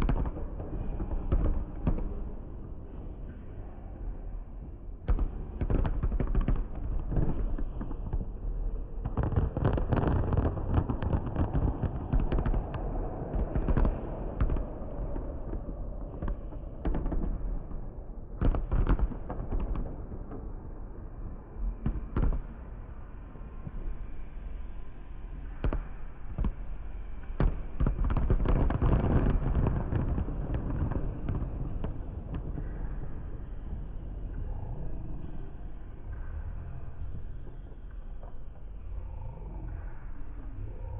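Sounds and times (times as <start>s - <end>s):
low rumble: 0.0s - 40.9s
fireworks bangs: 9.0s - 17.5s, 27.4s - 33.0s.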